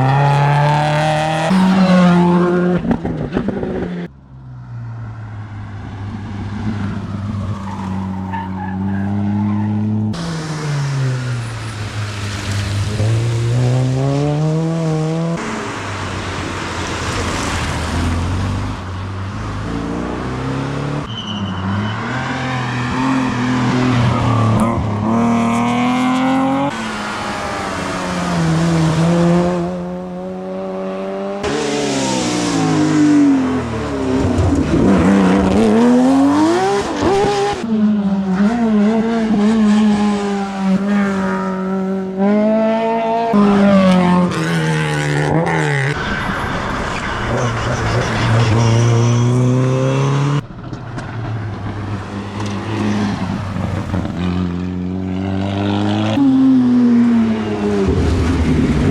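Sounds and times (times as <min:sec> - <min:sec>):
rally car engines revving: 0:00.0 - 0:04.1, 0:05.6 - 0:58.9.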